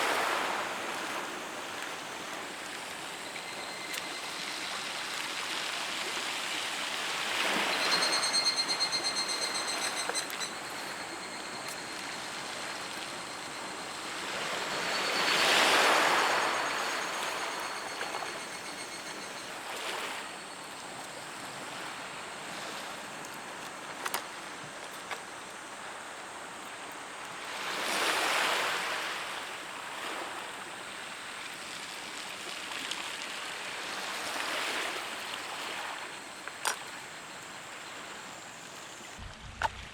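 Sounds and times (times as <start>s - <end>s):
sea waves washing onto shore: 0.0s - 37.2s
faint high whistling tone: 3.2s - 5.2s, 7.3s - 20.6s.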